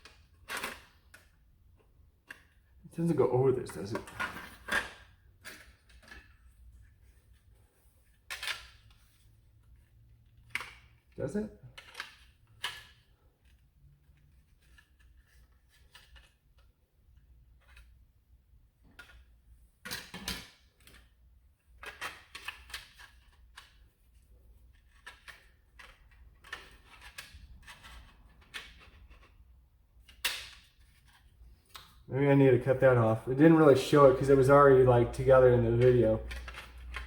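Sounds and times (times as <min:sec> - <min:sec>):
plastic parts clicking and knocking: 0:18.8 - 0:24.0, 0:35.8 - 0:37.0.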